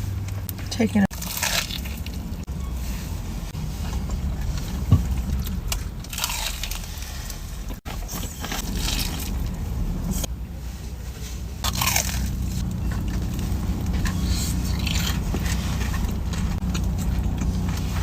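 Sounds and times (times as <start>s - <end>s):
chewing and crunching food: 1.1s - 2.5s, 4.5s - 9.6s, 11.6s - 18.0s.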